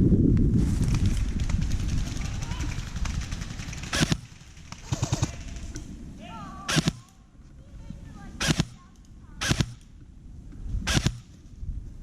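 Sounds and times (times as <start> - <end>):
airsoft rifle shots: 2.6 - 5.9, 6.6 - 7.2, 8.3 - 9.9, 10.8 - 11.4.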